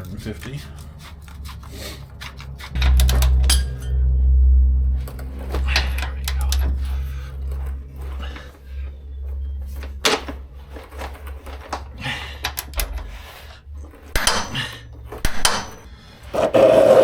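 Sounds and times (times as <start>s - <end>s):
low steady hum: 0.0s - 16.9s
metal tools clinking: 5.2s - 16.0s.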